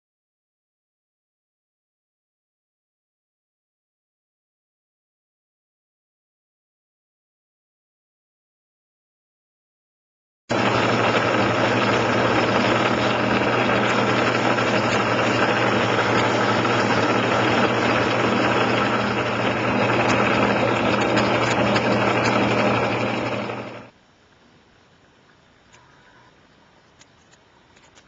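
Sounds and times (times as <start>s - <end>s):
electric motor humming: 10.5s - 23.9s.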